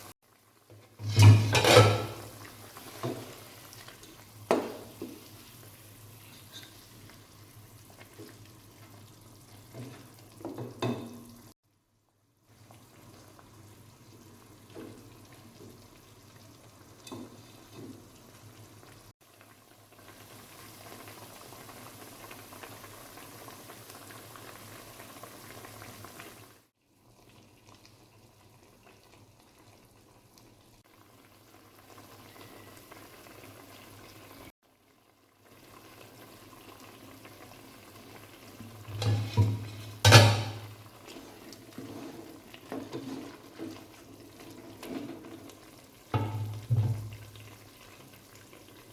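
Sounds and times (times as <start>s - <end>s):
food sizzling in a pot: 0.0s - 11.6s, 12.3s - 48.9s
stirring knocks and scrapes: 0.7s - 5.4s, 6.2s - 7.0s, 9.7s - 11.2s, 17.0s - 18.1s, 38.6s - 47.5s.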